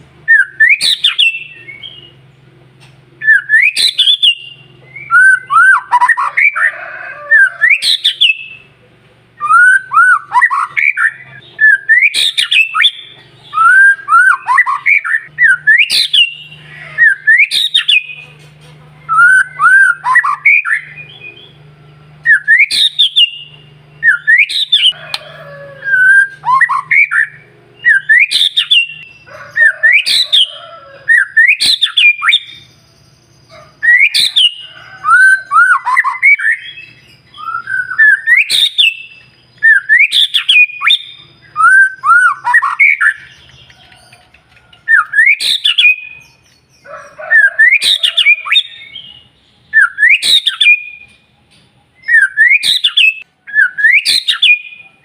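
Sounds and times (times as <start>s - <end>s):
bird singing whistles and clicks: 36.0s - 46.6s.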